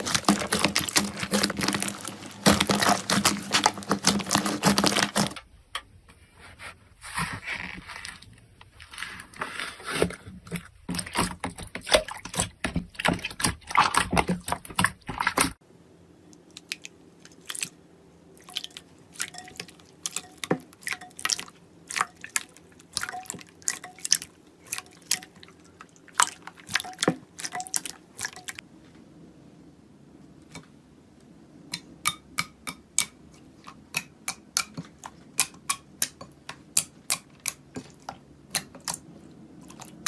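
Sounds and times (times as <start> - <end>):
slime squished by hand: 0.0 - 5.3.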